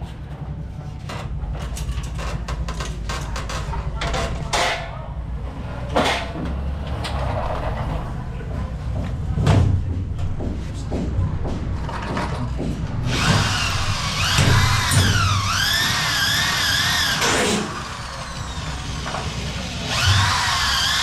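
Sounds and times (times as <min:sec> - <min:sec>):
power drill boring: 0:13.1 - 0:21.0.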